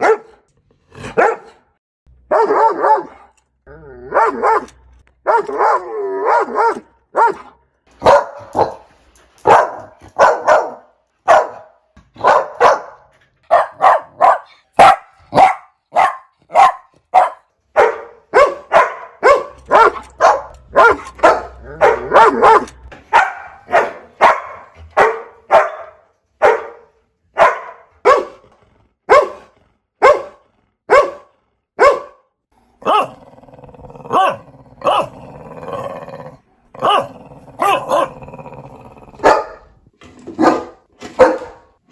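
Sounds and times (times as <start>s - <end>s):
puppy barking: 0.0s - 0.4s, 1.2s - 1.6s, 2.3s - 3.3s, 4.1s - 28.4s, 29.1s - 32.2s, 32.8s - 38.3s, 39.1s - 39.7s, 40.4s - 41.7s.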